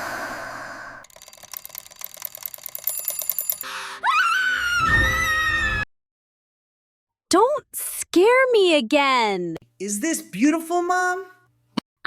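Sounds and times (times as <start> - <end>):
bell alarm clock ringing: 1.1 - 3.8.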